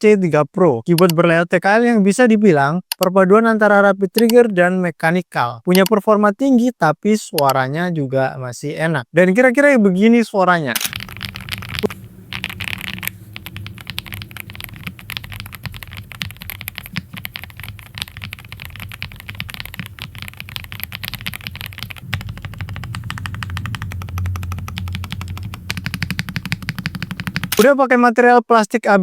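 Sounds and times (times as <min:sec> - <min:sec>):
fast mechanical keyboard typing: 0:10.8 - 0:27.7.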